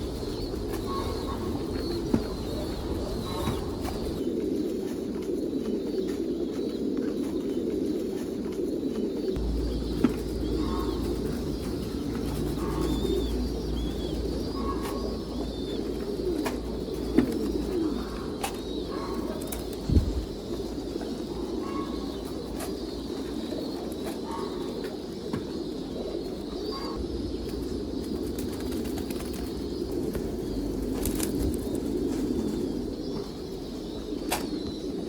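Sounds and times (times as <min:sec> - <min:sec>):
pigeons cooing: 0:00.0 - 0:35.0.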